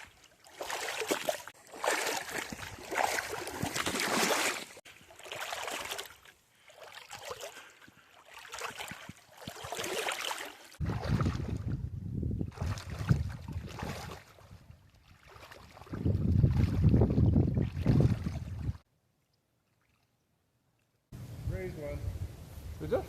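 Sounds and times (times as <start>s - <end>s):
brook water splashing: 0.0s - 11.6s, 12.5s - 18.8s
low wind rumble on microphone: 10.8s - 14.9s, 15.7s - 18.8s, 21.2s - 23.0s.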